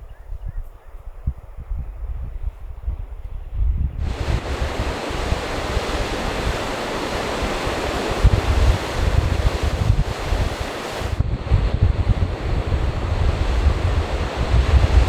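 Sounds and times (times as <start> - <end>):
wind buffeting microphone: 0.0 - 15.0
ocean surf rushing: 4.0 - 15.0.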